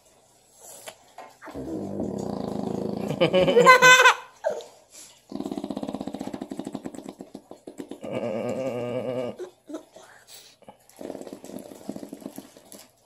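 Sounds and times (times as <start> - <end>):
baby growling: 8.0 - 9.9.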